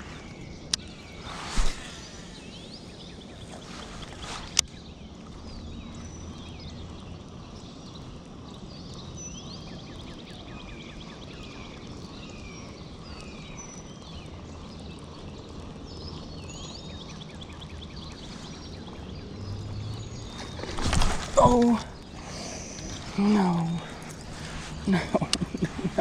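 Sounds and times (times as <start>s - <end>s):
songbirds chirping: 0.0s - 26.0s
steady low background rush: 17.3s - 26.0s.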